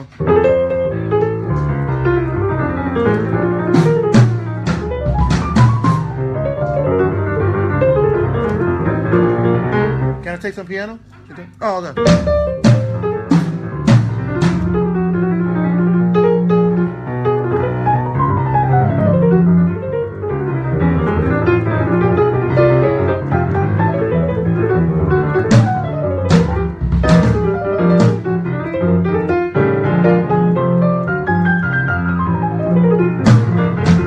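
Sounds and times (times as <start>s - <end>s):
piano running quick scales: 0.0s - 11.0s, 11.6s - 34.0s
sharp drum hits: 3.7s - 6.2s, 12.0s - 15.0s, 25.4s - 28.5s, 33.2s - 34.0s.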